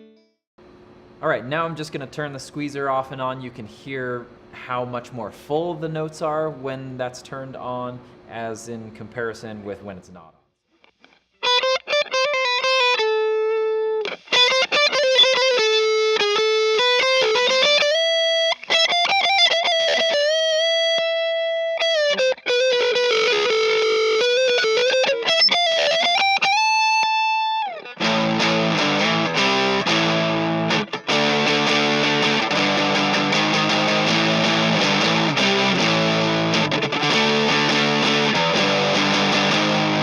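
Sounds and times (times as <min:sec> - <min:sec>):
clean electric guitar melody: 0:00.0 - 0:00.4, 0:11.4 - 0:40.0
heavily distorted guitar: 0:10.9 - 0:40.0.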